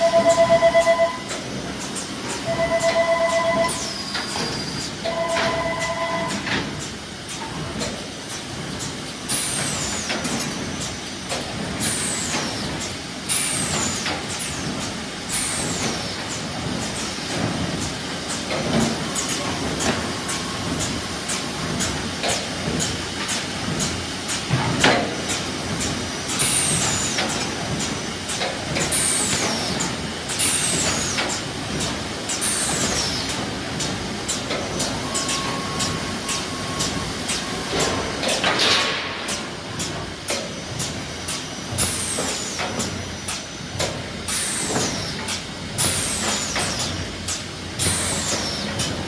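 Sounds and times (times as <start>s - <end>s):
steady machine noise: 0.0s - 49.0s
machine clicks and knocks: 25.7s - 44.0s.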